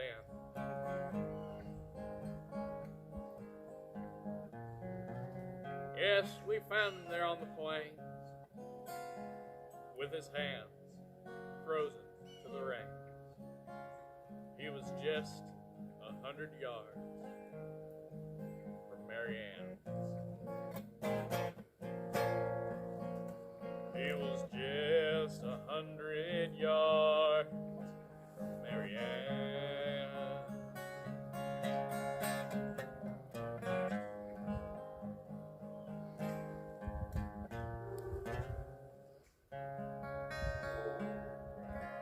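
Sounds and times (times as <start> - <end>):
acoustic guitar strumming: 0.0 - 42.0
man singing with vibrato: 23.9 - 27.6, 28.4 - 30.8.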